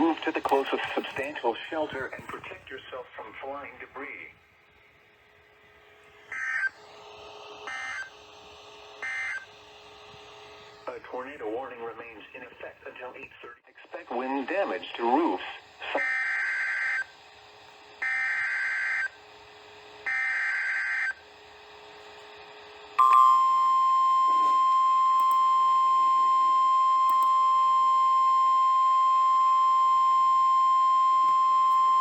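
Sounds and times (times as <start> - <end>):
steady alarm tone: 6.2 - 6.9, 7.6 - 8.2, 9.0 - 9.6, 16.0 - 17.1, 18.0 - 19.2, 20.0 - 21.2, 23.0 - 32.0.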